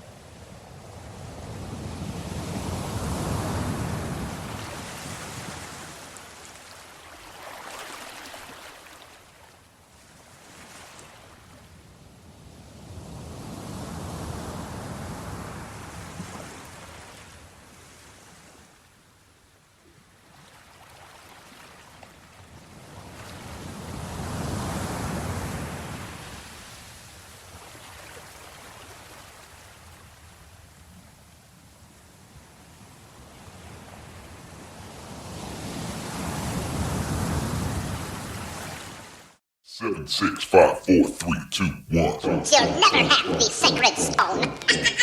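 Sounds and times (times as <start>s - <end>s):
waves washing onto shore: 0.0s - 11.8s, 22.7s - 29.9s.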